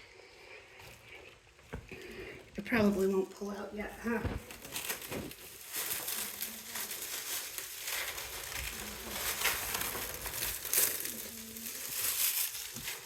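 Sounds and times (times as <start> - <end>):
packaging rustling and crinkling: 4.1 - 13.0.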